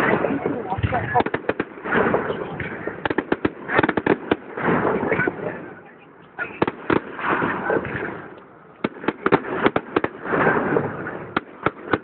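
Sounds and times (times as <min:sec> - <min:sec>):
firework bangs and crackles: 0:00.0 - 0:12.0
firework rushing and fizzing: 0:06.4 - 0:12.0.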